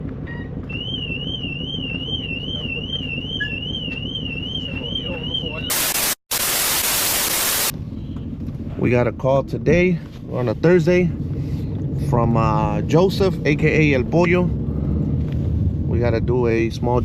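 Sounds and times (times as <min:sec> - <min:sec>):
low rumble: 0:00.0 - 0:17.0
warbling electronic siren tone: 0:00.2 - 0:07.7
static hiss: 0:05.7 - 0:07.7.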